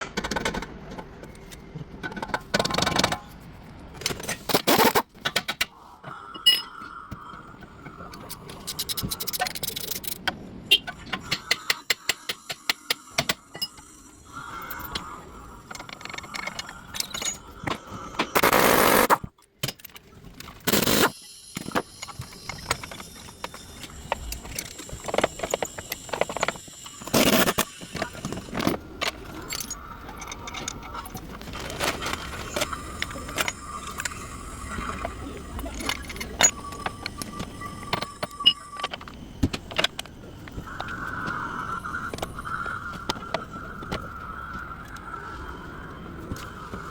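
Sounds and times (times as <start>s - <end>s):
metal tools clinking and scraping: 6.4s - 6.8s, 19.8s - 40.6s.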